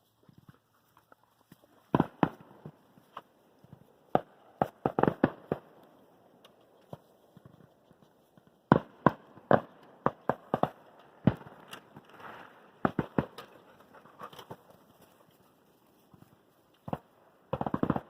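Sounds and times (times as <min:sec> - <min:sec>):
fireworks bangs: 0:01.9 - 0:02.8, 0:04.1 - 0:05.8, 0:08.7 - 0:13.7, 0:16.8 - 0:18.0.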